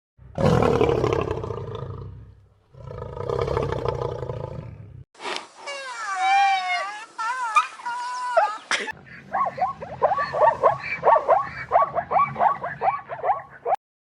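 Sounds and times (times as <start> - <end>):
big cat roaring: 0.3 - 5.0.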